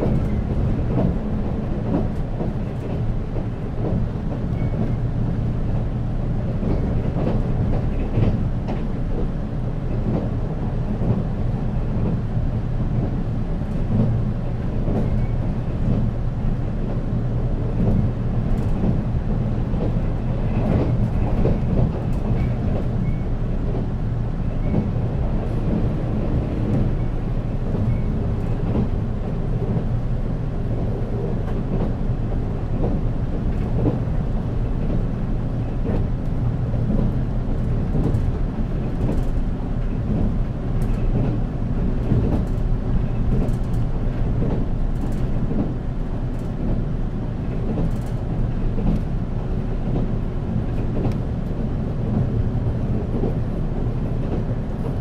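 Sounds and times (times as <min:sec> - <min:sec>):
train motors and wheels rumbling: 0:00.0 - 0:55.0
clicks from the track: 0:47.5 - 0:49.1, 0:49.8 - 0:52.3.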